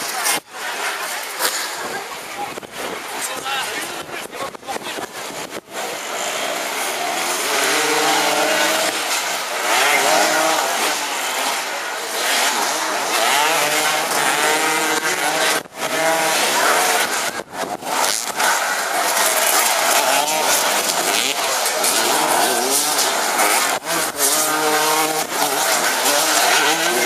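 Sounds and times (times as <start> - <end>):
racing engines revving: 0.0 - 27.0.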